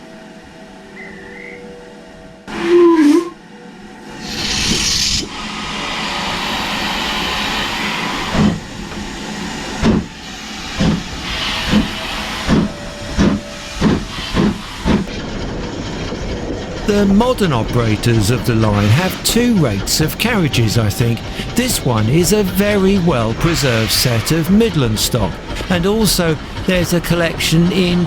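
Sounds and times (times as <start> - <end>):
steam hissing: 4.0 - 15.2, 16.8 - 28.0
steam locomotive exhaust chuffs: 4.0 - 28.0.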